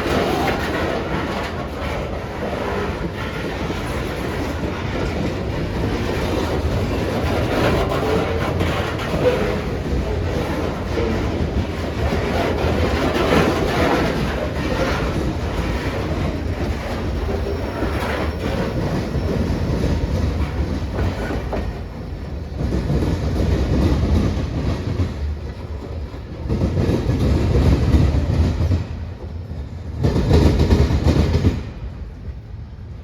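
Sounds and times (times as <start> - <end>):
train wheels clicking over rails: 0.0 - 32.5
train rumbling past: 0.0 - 33.0.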